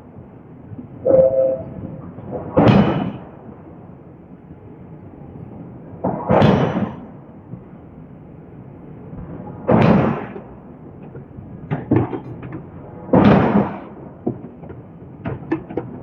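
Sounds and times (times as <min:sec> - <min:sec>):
forging hammer blows ringing: 0:02.6 - 0:03.3.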